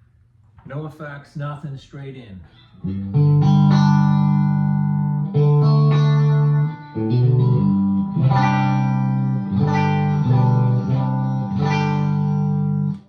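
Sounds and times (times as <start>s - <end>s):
electric guitar chords ringing: 2.6s - 13.0s.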